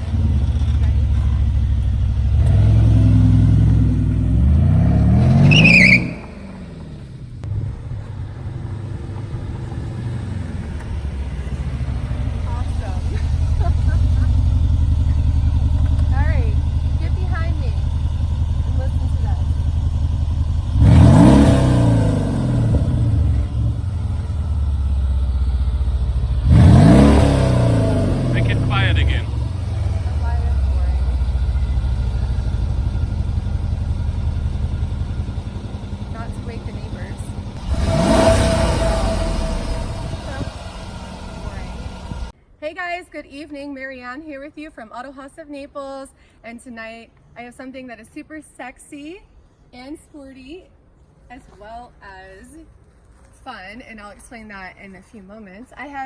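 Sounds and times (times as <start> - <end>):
car engine revving: 0.0 - 42.3
high wavering whistle: 5.4 - 6.3, 37.7 - 40.7.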